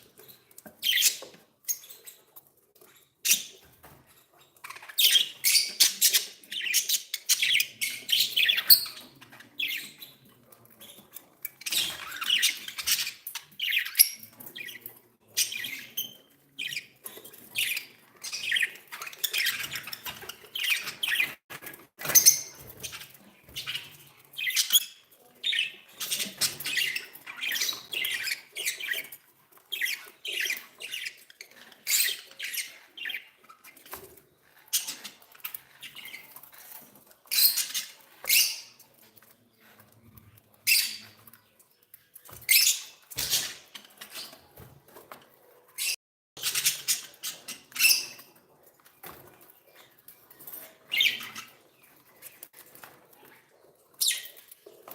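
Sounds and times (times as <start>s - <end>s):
budgerigars chirping: 4.7s - 10.2s, 11.7s - 21.4s, 22.2s - 29.2s, 50.9s - 51.8s.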